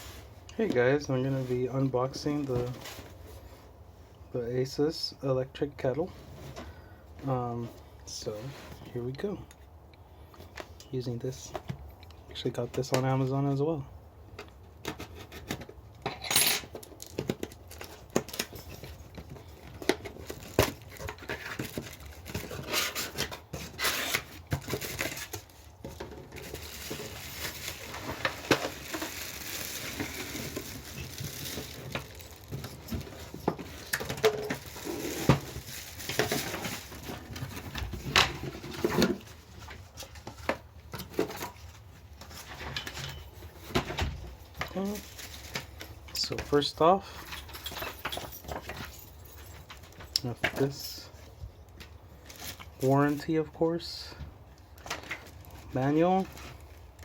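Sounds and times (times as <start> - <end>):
packaging rustling and tearing: 16.7 - 46.6, 51.8 - 53.3.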